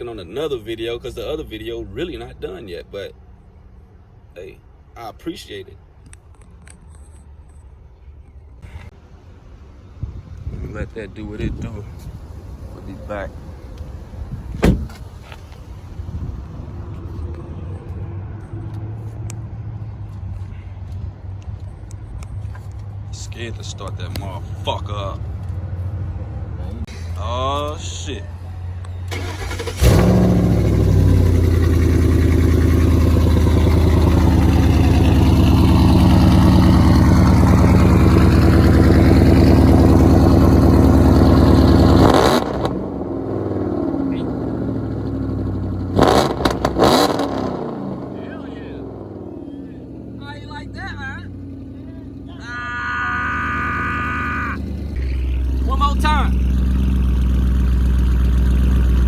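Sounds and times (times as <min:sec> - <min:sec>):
car engine idling: 0:08.6 - 0:17.8, 0:27.0 - 0:59.0.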